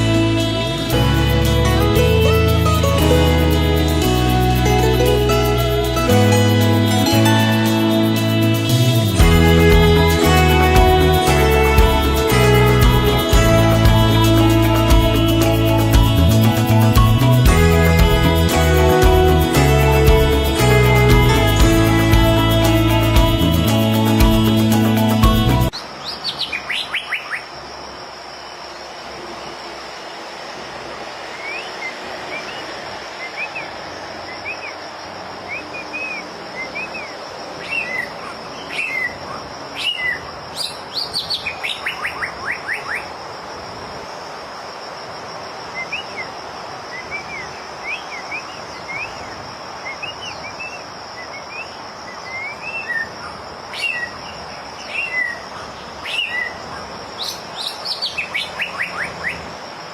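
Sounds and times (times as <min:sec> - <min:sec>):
high insect buzz: 0:00.0 - 0:42.1
bird singing whistled phrases: 0:26.1 - 0:27.5, 0:31.4 - 0:32.6, 0:35.5 - 0:39.2, 0:39.8 - 0:43.0, 0:56.0 - 0:56.6, 0:57.2 - 0:59.4.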